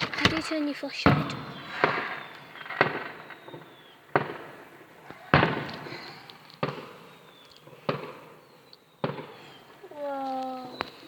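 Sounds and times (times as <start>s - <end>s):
fireworks bangs: 0.0s - 10.0s.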